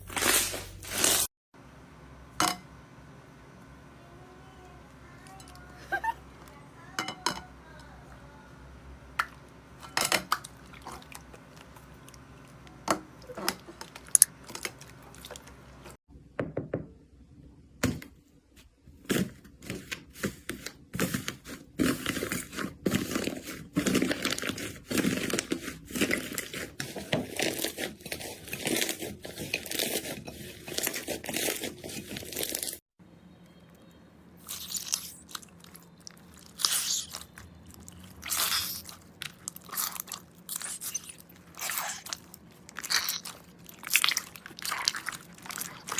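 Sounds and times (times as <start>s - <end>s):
slime crackling: 34.5s - 45.9s.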